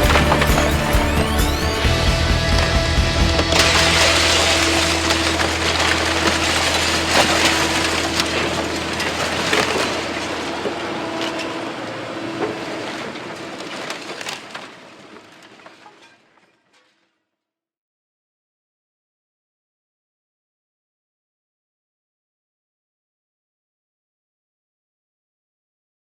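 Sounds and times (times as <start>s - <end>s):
sharp cracks: 0.0s - 11.6s
wood and debris crunching: 0.0s - 17.0s.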